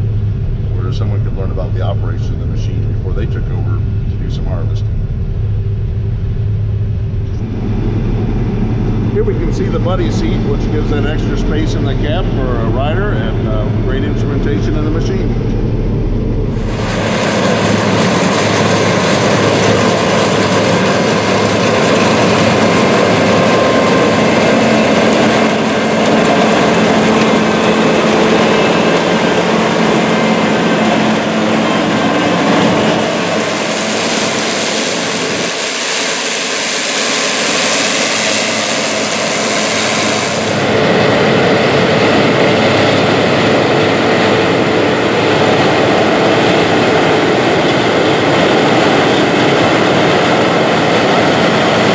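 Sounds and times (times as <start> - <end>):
combine harvester running: 0.0 - 51.9
high hiss: 33.1 - 40.7.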